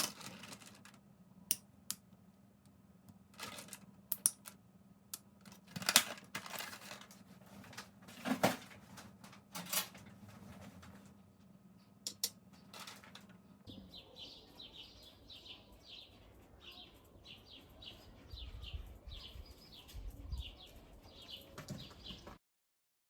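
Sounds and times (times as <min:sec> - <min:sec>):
small birds chirping: 0:11.2 - 0:22.4.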